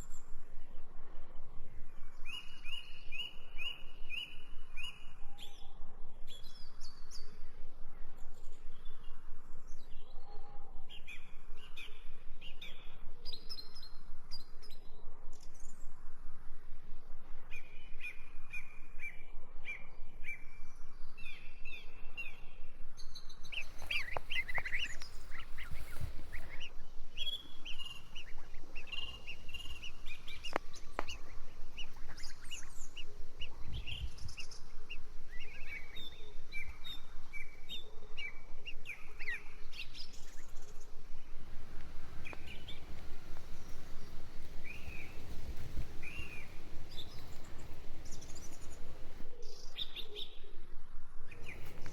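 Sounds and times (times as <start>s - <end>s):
birds chirping and trilling: 23.4s - 49.3s, 51.4s - 51.9s.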